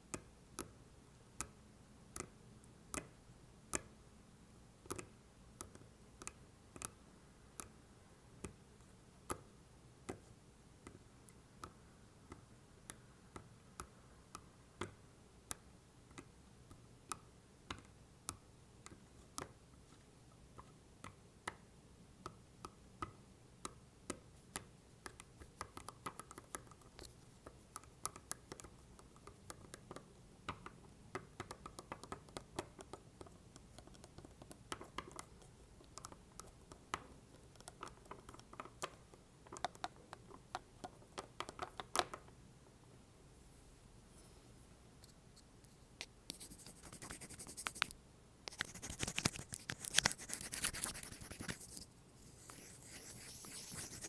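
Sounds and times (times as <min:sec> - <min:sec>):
soft hissy scratching: 0:43.3 - 0:54.0.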